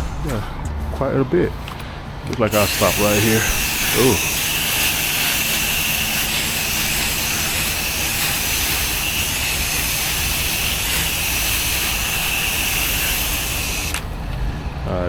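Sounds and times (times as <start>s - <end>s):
pressure washer spraying water: 2.5s - 14.3s.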